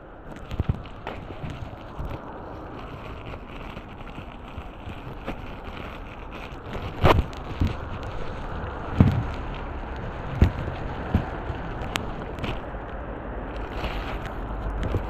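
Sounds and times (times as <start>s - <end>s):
wind and sea on rocky shore: 0.0s - 15.0s
wind buffeting microphone: 0.0s - 15.0s.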